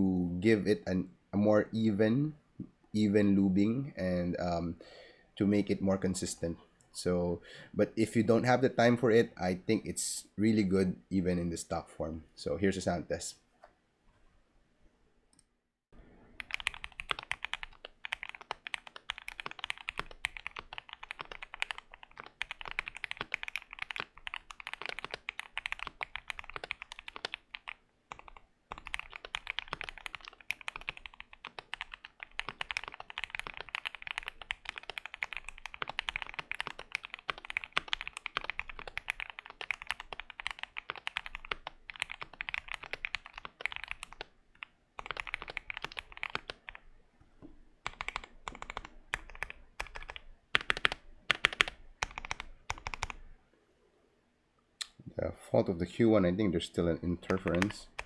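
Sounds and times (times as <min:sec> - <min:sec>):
typing on mechanical keyboard: 0:16.4 - 0:46.8, 0:47.8 - 0:53.2, 0:57.3 - 0:58.0.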